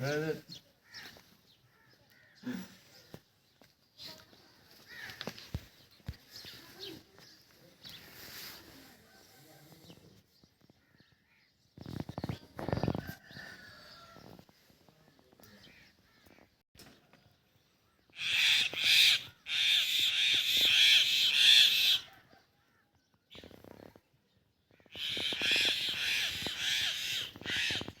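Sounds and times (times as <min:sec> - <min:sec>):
harsh rasping animal calls: 0:18.1 - 0:22.2, 0:24.8 - 0:28.0.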